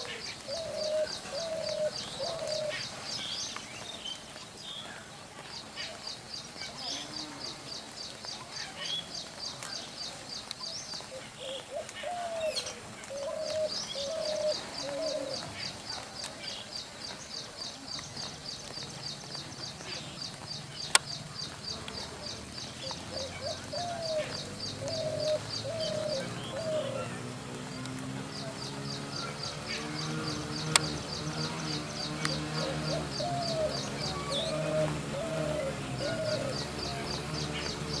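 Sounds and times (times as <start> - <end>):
dove cooing: 0.0 - 3.3, 11.1 - 16.0, 19.6 - 38.0.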